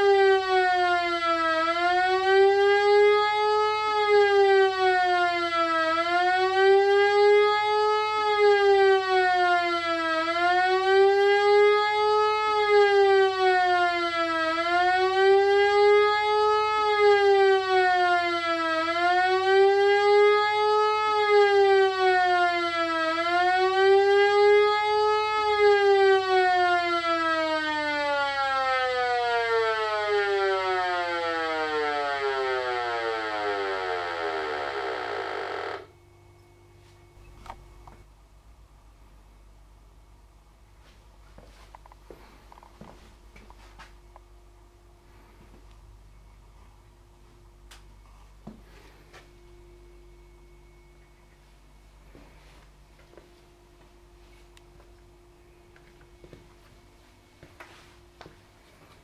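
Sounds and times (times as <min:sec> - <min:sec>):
siren wailing: 0:00.0 - 0:36.0.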